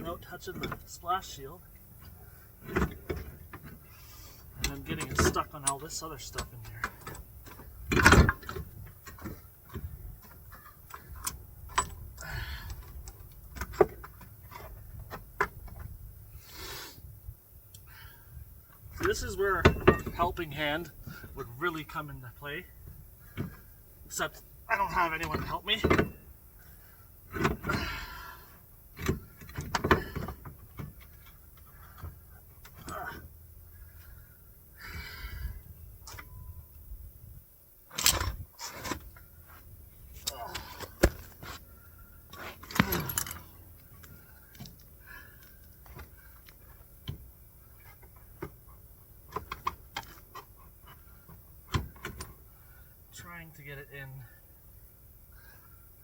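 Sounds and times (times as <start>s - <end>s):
metal knocks and clunks: 0.0s - 1.0s, 4.6s - 12.2s, 18.8s - 21.3s, 24.9s - 26.3s
clunks and knocks: 0.0s - 1.2s, 2.0s - 3.8s, 4.6s - 16.0s, 18.8s - 21.4s, 22.8s - 26.3s, 27.3s - 28.1s, 28.9s - 33.4s, 40.2s - 41.7s.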